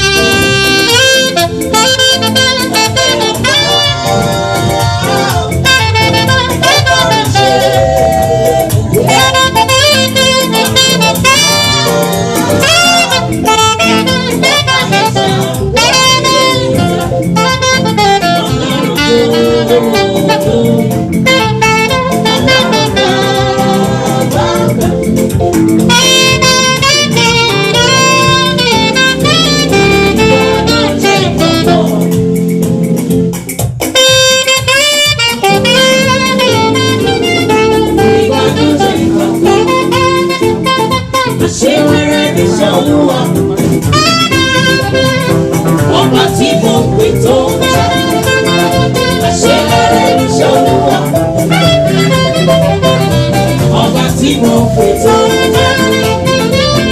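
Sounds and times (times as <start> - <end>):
gospel band accompaniment: 0.0 - 56.9
saxophone melody: 0.0 - 56.9.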